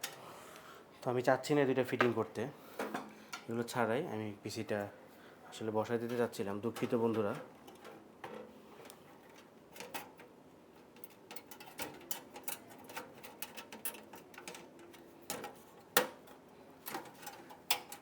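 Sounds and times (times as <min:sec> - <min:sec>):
computer parts clicking and tapping: 0:06.0 - 0:18.0.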